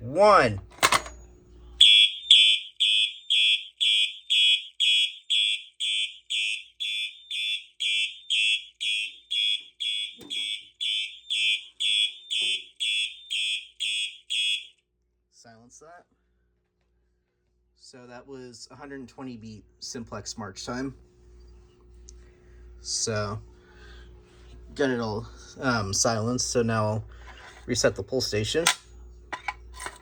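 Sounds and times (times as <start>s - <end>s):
shrill fire alarm horn blasts: 1.8s - 14.8s.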